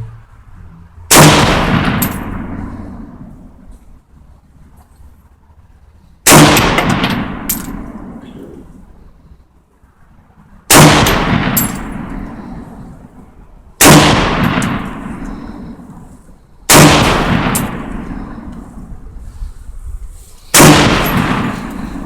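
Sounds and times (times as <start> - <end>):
rifle shots with echo: 1.1 - 3.6, 6.2 - 8.8, 10.7 - 13.0, 13.8 - 16.1, 16.7 - 18.9, 20.5 - 22.0.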